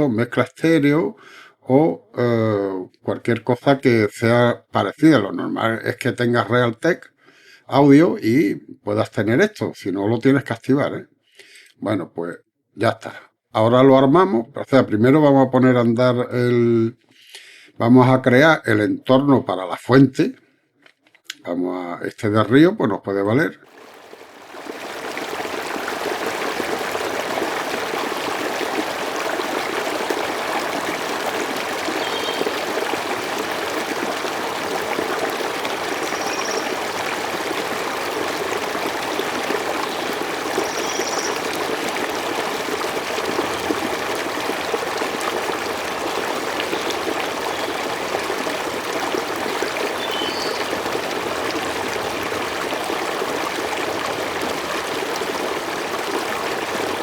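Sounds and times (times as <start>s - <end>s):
flowing stream water: 23.7s - 57.0s
high chirps: 36.1s - 36.8s.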